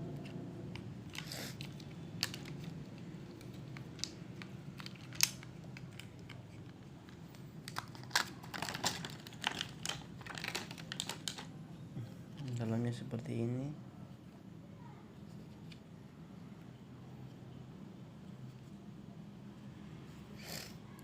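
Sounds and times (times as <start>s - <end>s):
packaging crinkling: 1.1s - 11.5s.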